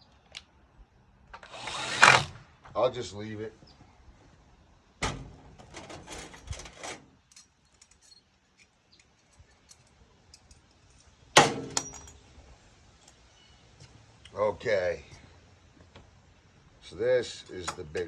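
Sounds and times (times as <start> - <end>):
small metal hardware clinking: 5.9 - 12.3.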